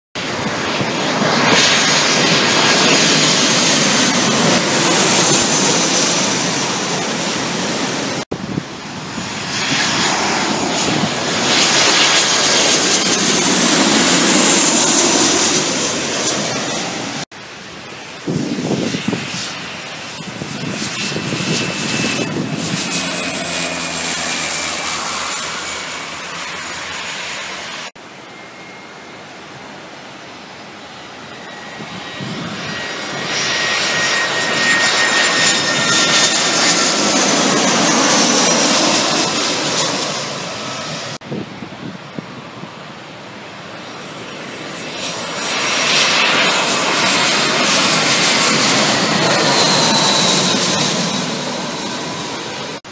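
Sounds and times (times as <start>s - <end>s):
airliner engines passing: 0.2s - 52.9s
high whine falling in pitch: 9.5s - 40.6s.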